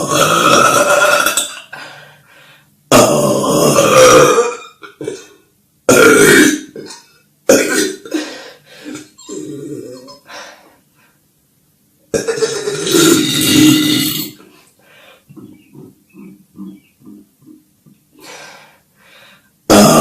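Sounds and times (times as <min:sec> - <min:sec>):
girls burping loudly: 0:12.2 - 0:14.4.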